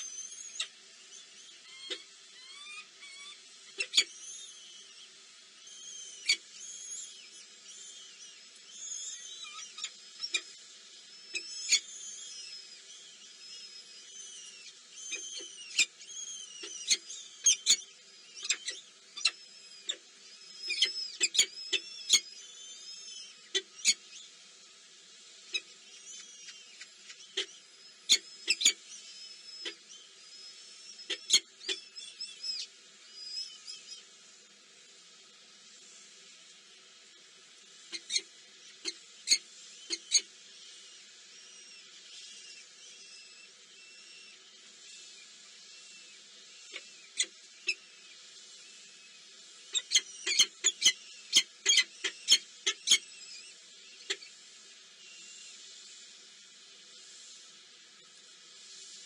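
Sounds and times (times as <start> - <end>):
baby birds cheeping: 0.0 - 24.3, 25.5 - 34.0, 37.9 - 40.3, 49.7 - 54.3
nestlings begging chirps: 11.2 - 24.3, 25.5 - 34.0, 49.7 - 54.2.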